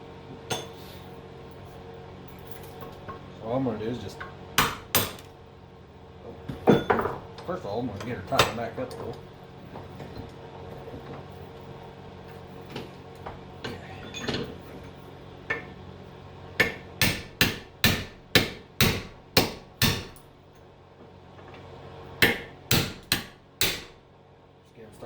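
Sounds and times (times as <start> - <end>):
hammer striking metal punch: 4.6 - 5.3, 16.6 - 20.2, 22.2 - 24.0.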